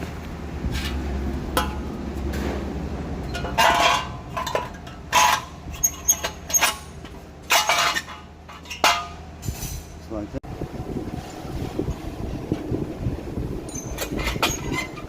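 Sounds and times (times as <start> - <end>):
metal parts clinking and clanking: 3.2 - 10.0, 13.7 - 15.0.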